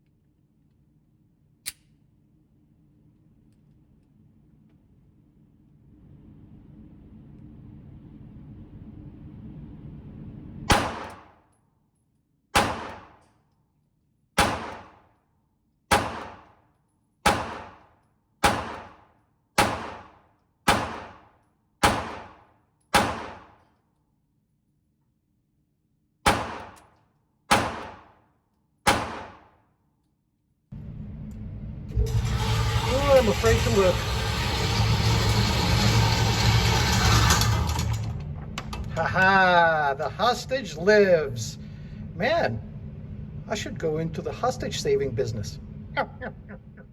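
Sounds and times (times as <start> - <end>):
steady low hum: 0.0 - 11.6, 12.5 - 13.2, 30.6 - 46.9
pistol shots echoing indoors: 10.7 - 11.5, 12.5 - 13.6, 14.3 - 24.0, 26.2 - 30.1.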